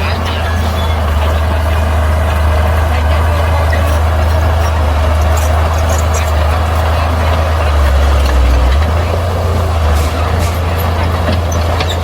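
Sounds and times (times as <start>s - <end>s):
diesel engine droning: 0.0s - 12.0s.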